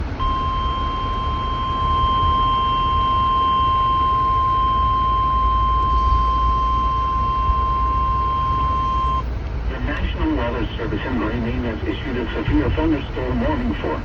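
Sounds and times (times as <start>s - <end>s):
low background rumble: 0.0s - 14.0s
steady alarm beep: 0.2s - 9.2s.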